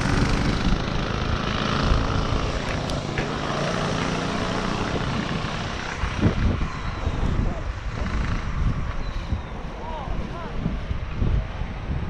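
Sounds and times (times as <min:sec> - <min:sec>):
small motorbike engine running: 0:00.0 - 0:09.0
wind noise on microphone: 0:00.0 - 0:12.0.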